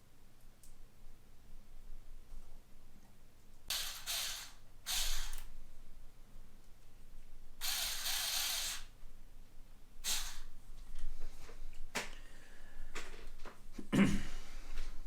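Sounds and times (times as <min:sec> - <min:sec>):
electric screwdriver whirring: 0:03.7 - 0:05.5, 0:07.6 - 0:08.9, 0:10.0 - 0:10.5.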